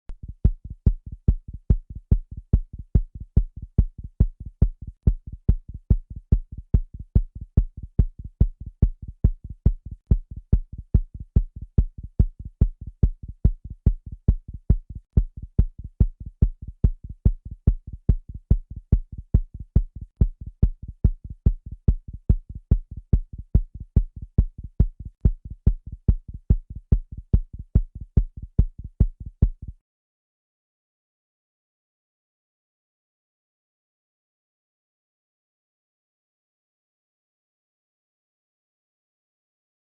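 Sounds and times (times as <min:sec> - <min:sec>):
fast heartbeat thumps: 0:00.1 - 0:29.8.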